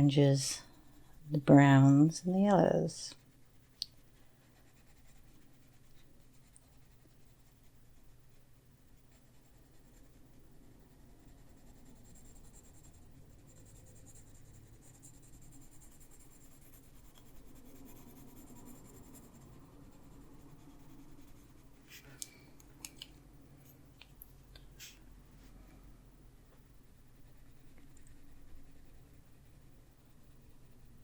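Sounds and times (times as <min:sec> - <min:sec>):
colored pencil scratching paper: 0:03.1 - 0:22.2.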